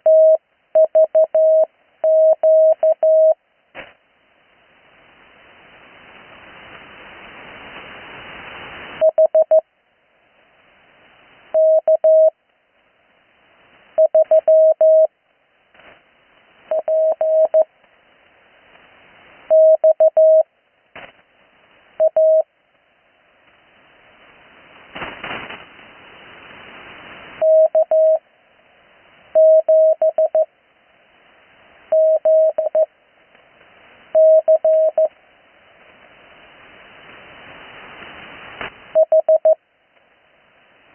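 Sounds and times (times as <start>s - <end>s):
morse code tone: 0.0s - 3.4s, 9.0s - 9.6s, 11.6s - 12.3s, 14.0s - 15.1s, 16.7s - 17.7s, 19.5s - 20.4s, 22.0s - 22.5s, 27.4s - 28.2s, 29.4s - 30.5s, 31.9s - 32.9s, 34.2s - 35.1s, 39.0s - 39.6s
radio receiver hiss: 0.0s - 9.6s, 10.2s - 22.5s, 23.3s - 40.9s.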